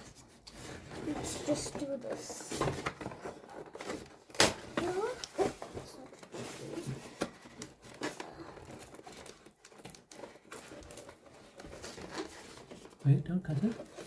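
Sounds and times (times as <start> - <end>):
packaging clicks and rustles: 0.0 - 14.0
plastic and cardboard crinkling: 0.0 - 14.0
sharp packaging snap: 4.3 - 5.4.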